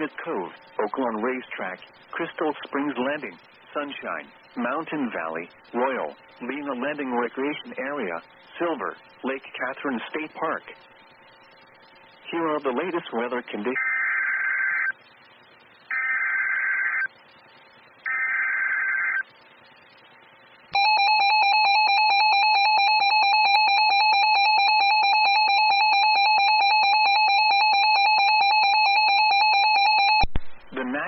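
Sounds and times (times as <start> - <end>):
screeching data bursts: 13.7 - 15.0, 15.9 - 17.2, 18.0 - 19.3.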